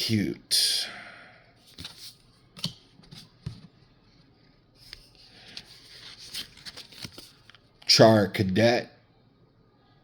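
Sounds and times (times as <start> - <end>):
trading cards rustling: 5.4 - 7.6.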